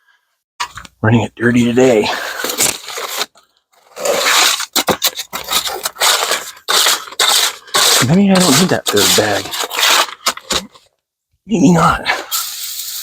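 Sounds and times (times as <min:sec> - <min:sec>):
tool scraping wet concrete: 0:02.1 - 0:10.8.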